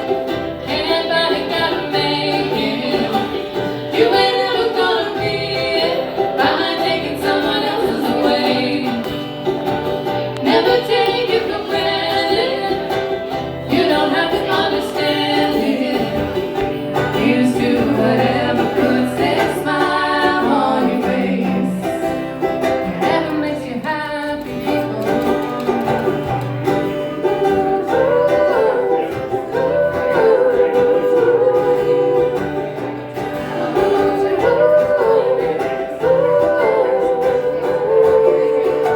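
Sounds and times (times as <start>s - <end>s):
plucked strings: 0.0s - 38.9s
voices singing in harmony: 0.0s - 38.9s.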